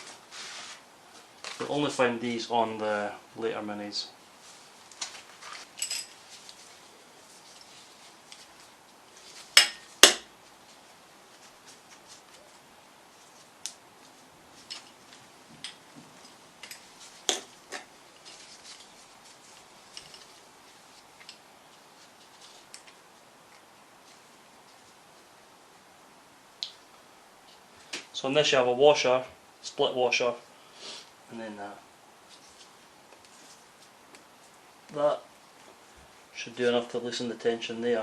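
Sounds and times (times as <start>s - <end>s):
steel tools clinking on metal: 5.8s - 6.2s.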